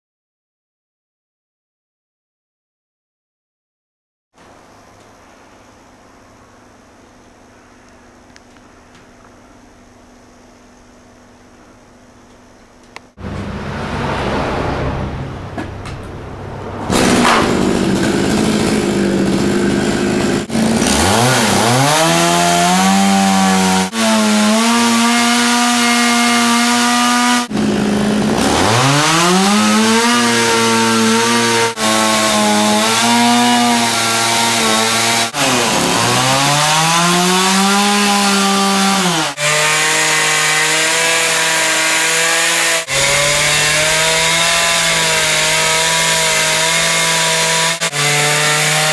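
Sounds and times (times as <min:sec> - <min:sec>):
chainsaw revving: 0:16.9 - 0:48.9.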